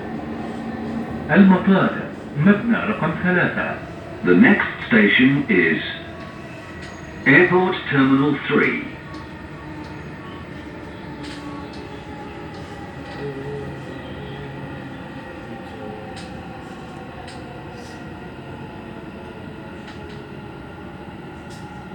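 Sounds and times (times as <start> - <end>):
train wheels rumbling: 0.0 - 21.9
faint short clicks: 11.2 - 11.8.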